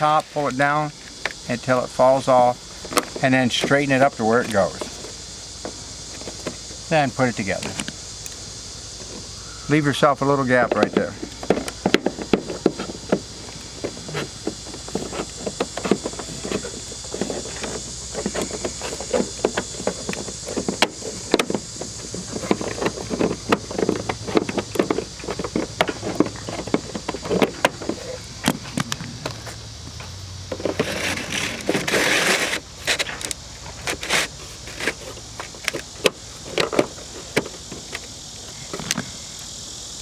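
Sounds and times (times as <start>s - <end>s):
gutter pieces clicking and rattling: 10.7s - 29.5s, 30.5s - 39.0s
scraping slide: 12.0s - 29.6s, 30.5s - 38.1s.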